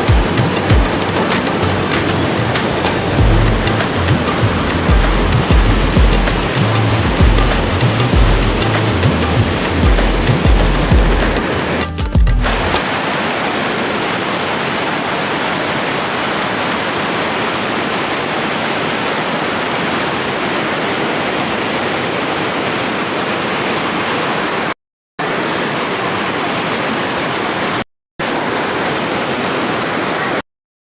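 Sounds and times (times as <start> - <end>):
waterfall rushing: 0.0 - 24.5.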